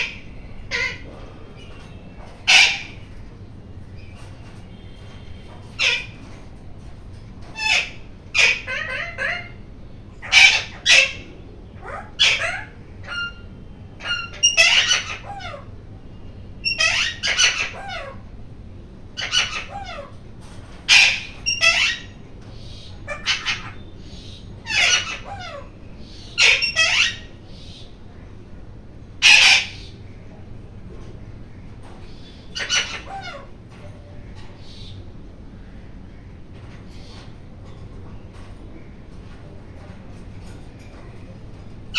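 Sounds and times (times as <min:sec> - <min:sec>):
parakeet squawking: 0:00.0 - 0:03.3, 0:05.7 - 0:06.3, 0:07.5 - 0:09.6, 0:10.2 - 0:15.8, 0:16.6 - 0:18.3, 0:19.2 - 0:20.2, 0:20.9 - 0:27.4, 0:29.2 - 0:30.0, 0:32.4 - 0:33.5.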